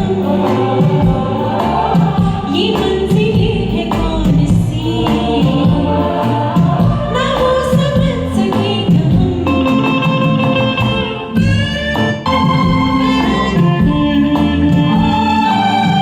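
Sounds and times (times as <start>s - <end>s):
woman singing: 0.0s - 11.0s
karaoke backing track: 0.0s - 16.0s.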